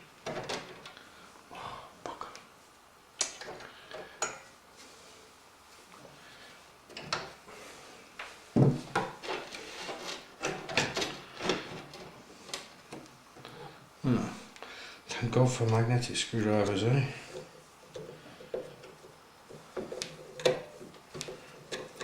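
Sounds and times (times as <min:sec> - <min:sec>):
knocks and scraping of computer parts: 0:00.2 - 0:00.9, 0:08.5 - 0:13.0, 0:17.3 - 0:22.0.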